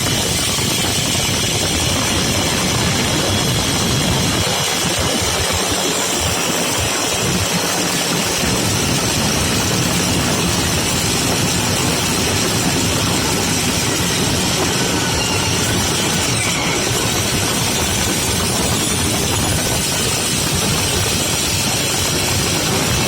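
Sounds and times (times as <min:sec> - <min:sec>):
power tool running: 0:08.4 - 0:23.0.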